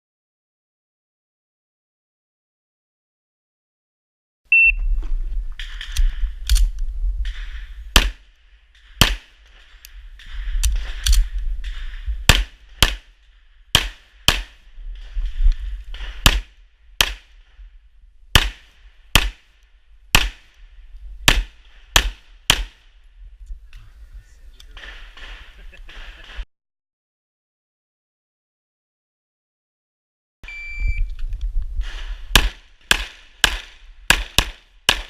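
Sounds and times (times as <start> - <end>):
pistol shots: 7.2 - 15.1, 15.9 - 17.4, 18.3 - 19.5, 20.1 - 20.6, 21.2 - 22.9, 24.8 - 26.4, 31.8 - 35.0.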